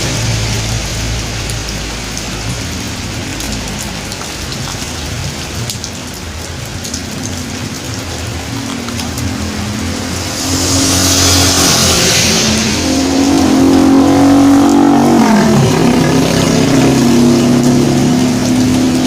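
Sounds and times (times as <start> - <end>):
vehicle engine passing: 8.3 - 19.0
hiss of tyres on wet road: 9.4 - 18.7.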